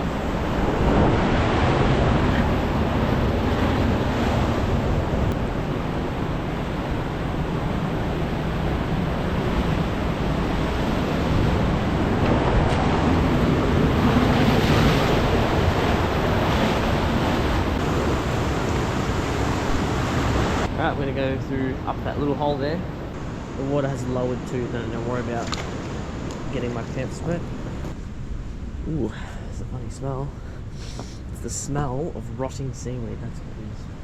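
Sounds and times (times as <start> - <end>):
surf washing against rocks: 0.0 - 20.7.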